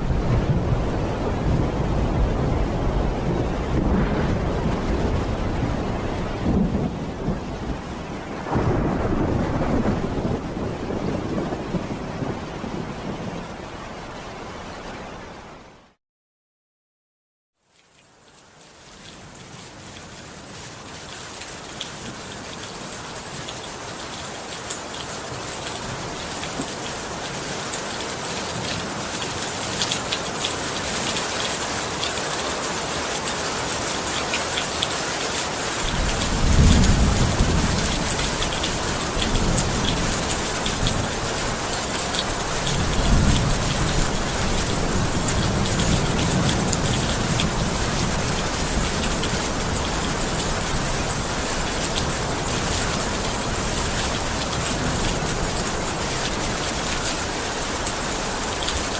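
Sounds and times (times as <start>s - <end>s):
low rolls of thunder: 0.0s - 13.6s, 35.9s - 57.5s
steady rain falling: 0.0s - 16.0s, 17.6s - 58.9s.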